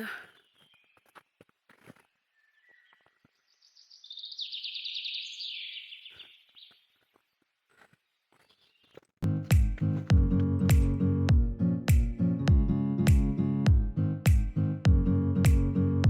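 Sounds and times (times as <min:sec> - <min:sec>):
loud guitar music: 0:09.2 - 0:16.0.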